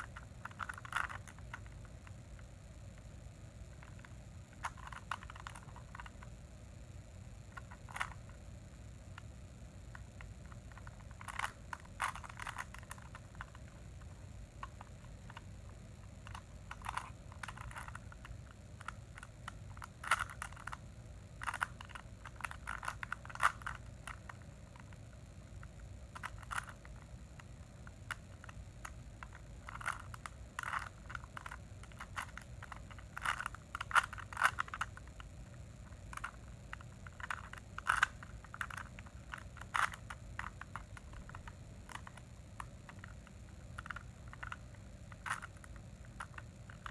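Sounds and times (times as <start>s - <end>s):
puzzle cube clicking and scraping: 0.0s - 2.5s, 3.8s - 6.3s, 7.5s - 8.4s, 9.9s - 46.9s.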